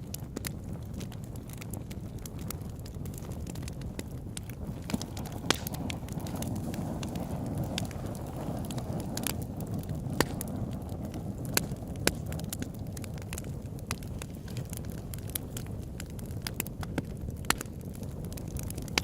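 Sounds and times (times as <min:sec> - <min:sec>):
low rush of fire: 0:00.0 - 0:19.0
pops and snaps of burning wood: 0:00.0 - 0:19.0.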